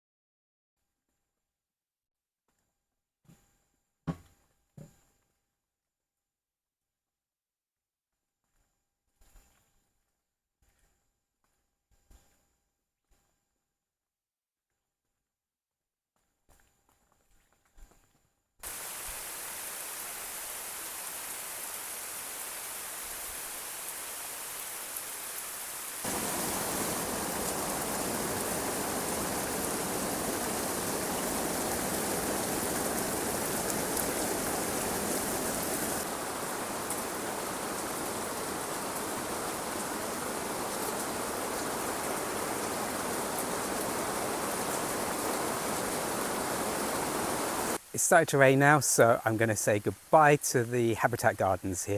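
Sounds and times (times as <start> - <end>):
steady rain falling: 18.6 - 51.9.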